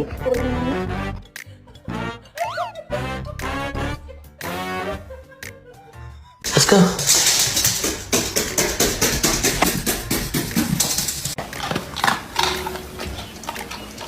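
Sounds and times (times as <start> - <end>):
background music with percussion: 6.4 - 11.6
knocks and clicks: 6.5 - 11.4.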